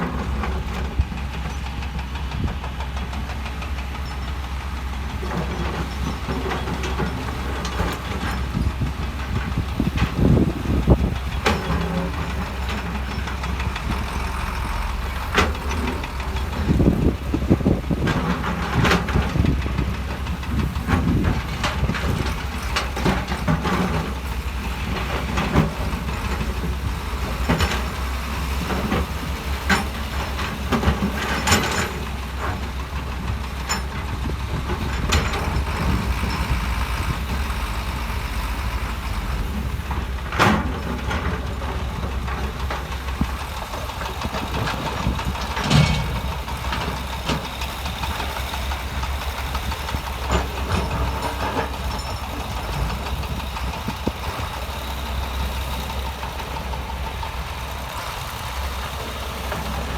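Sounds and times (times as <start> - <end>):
diesel machinery engine drone: 0.0 - 59.9
metallic clanks and knocks: 5.2 - 36.7, 39.6 - 54.4.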